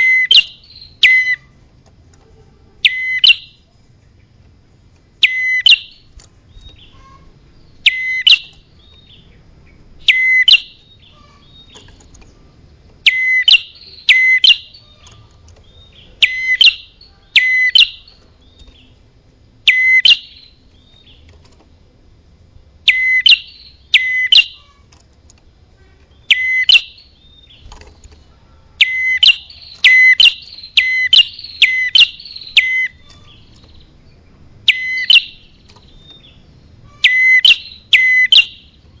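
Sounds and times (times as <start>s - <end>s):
sharp songbird call notes: 0.0s - 1.5s, 2.8s - 3.7s, 5.2s - 12.0s, 13.0s - 18.9s, 19.6s - 21.2s, 22.9s - 24.8s, 26.1s - 27.7s, 28.8s - 33.9s, 34.6s - 39.0s
faint bird chirps: 0.0s - 4.5s, 5.2s - 21.8s, 22.8s - 25.0s, 25.7s - 39.0s.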